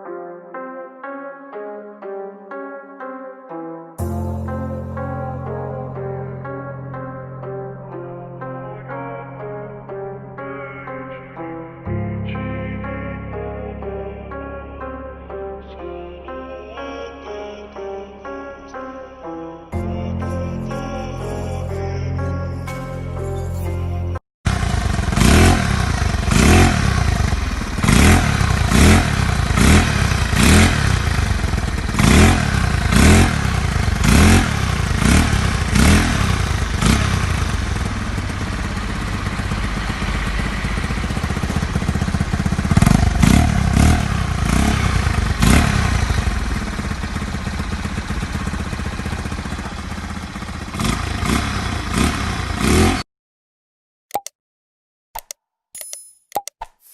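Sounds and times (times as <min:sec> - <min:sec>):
motorcycle engine revving and idling: 0:24.5 - 0:53.0.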